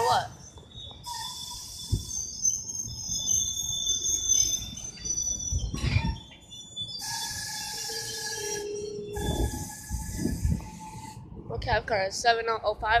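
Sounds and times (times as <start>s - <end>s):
train brakes squealing: 0.0s - 11.4s
air hissing: 1.0s - 4.5s, 7.0s - 11.4s.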